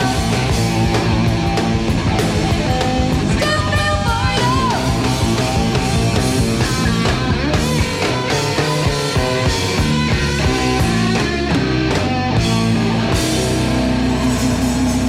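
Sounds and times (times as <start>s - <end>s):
live rock band playing: 0.0s - 15.0s.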